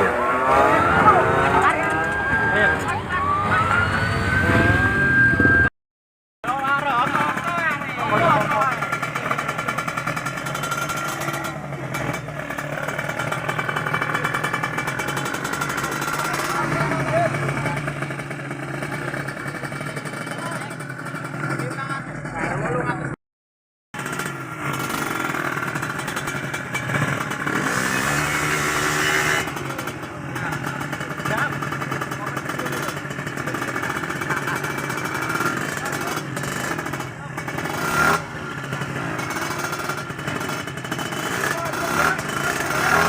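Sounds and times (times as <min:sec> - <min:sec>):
motorcycle engine running: 0:00.0 - 0:05.6, 0:06.4 - 0:23.2, 0:24.0 - 0:43.0.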